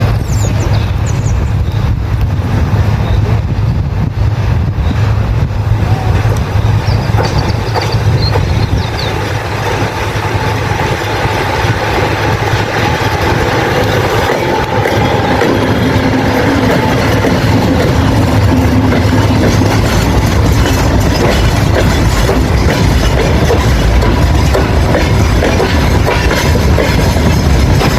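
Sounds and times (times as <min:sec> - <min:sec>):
freight train rumbling past: 0:00.0 - 0:27.9
wagon wheels clattering on rails: 0:06.9 - 0:27.9.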